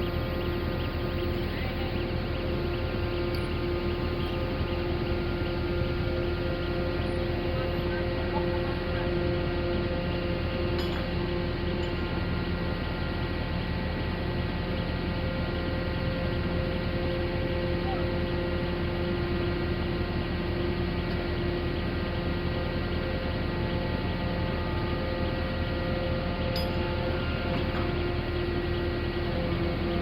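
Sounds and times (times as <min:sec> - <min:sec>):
engine low rumble: 0:00.0 - 0:30.0
hydraulic whining tones: 0:23.8 - 0:30.0.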